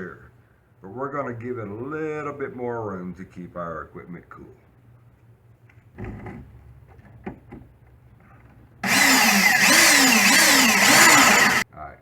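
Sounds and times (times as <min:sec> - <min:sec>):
power tool cutting wood: 0:08.8 - 0:11.6.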